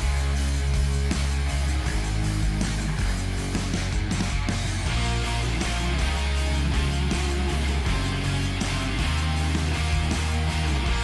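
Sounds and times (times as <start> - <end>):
rock music with electric guitar: 0.0 - 11.0.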